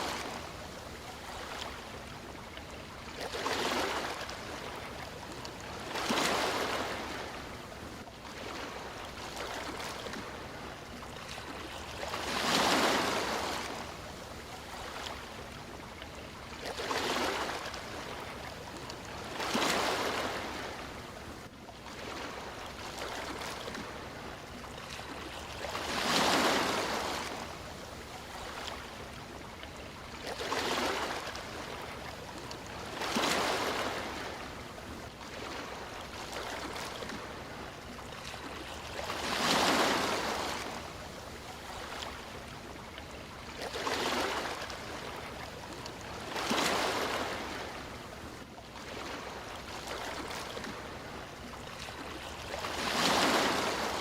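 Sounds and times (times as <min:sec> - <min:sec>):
background wash of water: 0:00.0 - 0:54.0
surf hiss of waves: 0:00.0 - 0:54.0.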